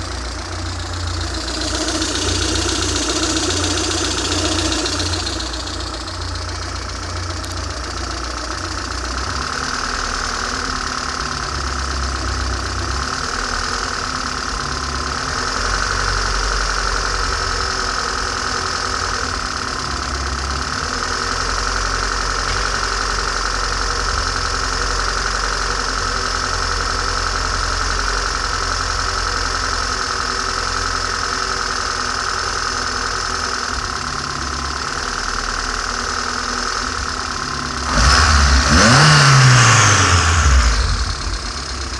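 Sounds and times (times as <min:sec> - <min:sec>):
faint engine whine: 0:00.0 - 0:09.4
engine revving: 0:00.0 - 0:25.7, 0:32.1 - 0:41.9
car engine idling: 0:00.0 - 0:41.9.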